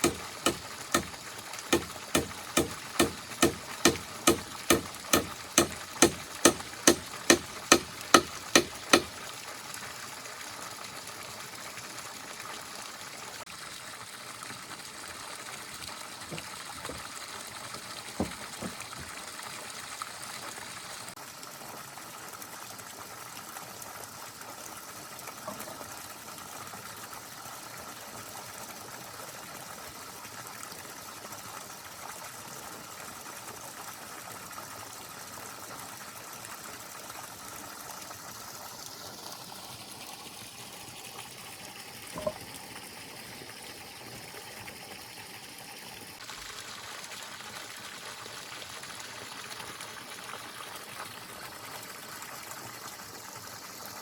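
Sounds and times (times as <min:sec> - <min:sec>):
rapid chopping strikes: 0:00.0 - 0:09.2, 0:18.2 - 0:19.1
faint knocks: 0:18.2 - 0:19.1, 0:42.2 - 0:42.4.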